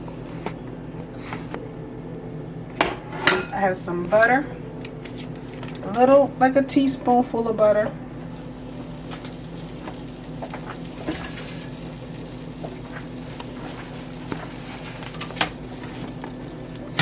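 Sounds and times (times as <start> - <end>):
butter sizzling in a pan: 8.1 - 17.0.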